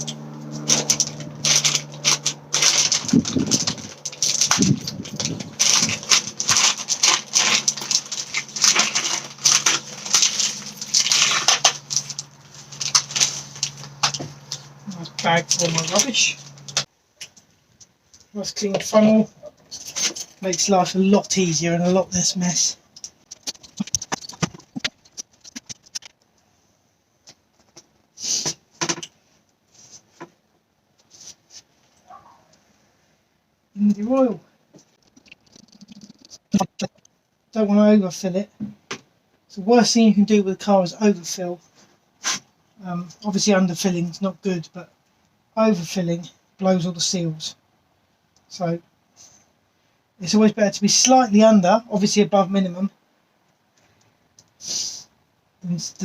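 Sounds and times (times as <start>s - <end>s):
plastic bag rustling: 0.0s - 16.9s, 23.2s - 26.1s.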